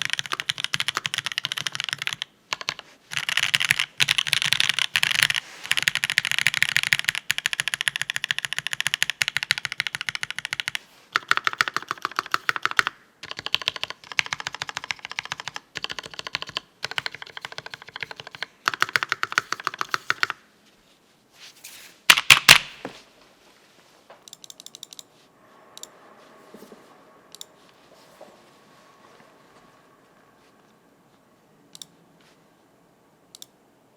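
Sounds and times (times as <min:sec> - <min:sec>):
mechanical keyboard typing: 0:00.0 - 0:20.4, 0:24.3 - 0:25.1, 0:31.7 - 0:31.9, 0:33.3 - 0:33.5.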